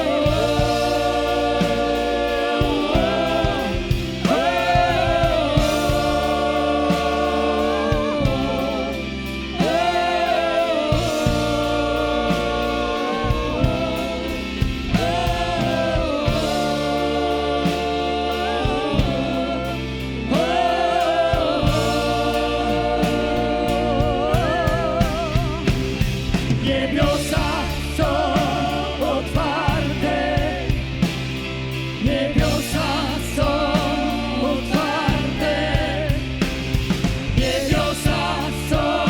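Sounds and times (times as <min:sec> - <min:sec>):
band with drums: 0:00.0 - 0:39.0
singers holding long notes: 0:00.0 - 0:39.0.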